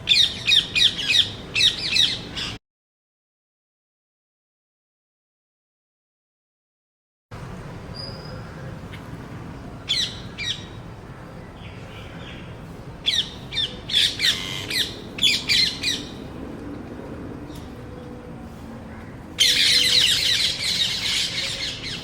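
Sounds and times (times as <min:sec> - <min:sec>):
birds calling: 0:00.0 - 0:02.6, 0:07.9 - 0:22.0.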